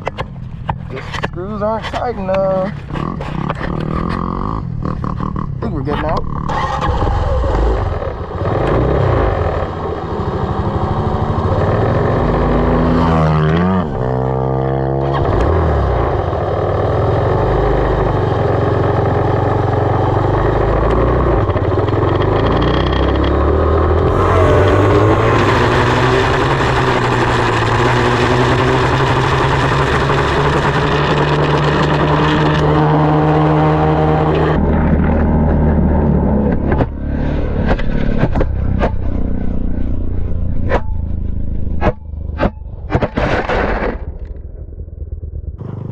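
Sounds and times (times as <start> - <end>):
dirt bike engine revving: 24.0 - 34.6.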